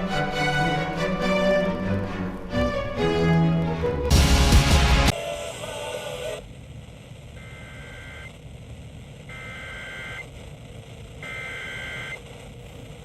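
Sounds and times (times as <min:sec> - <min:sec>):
music: 0:00.0 - 0:05.2.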